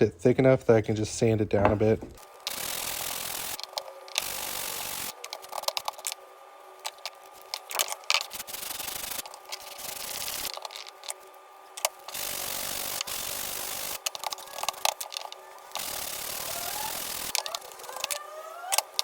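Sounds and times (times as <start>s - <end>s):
small clicks and knocks: 14.0s - 15.7s.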